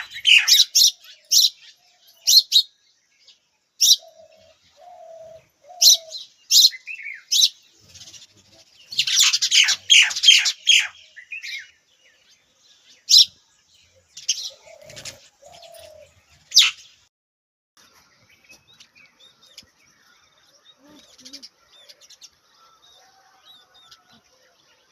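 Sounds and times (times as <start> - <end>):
small birds chirping: 0.0 - 17.1, 17.8 - 24.9
low cooing call: 3.9 - 6.3, 14.4 - 16.2, 20.7 - 22.0.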